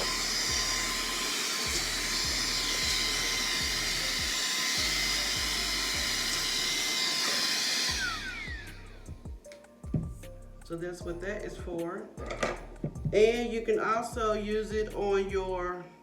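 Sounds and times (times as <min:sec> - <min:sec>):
mini vacuum blower motor whir: 0:00.0 - 0:09.1.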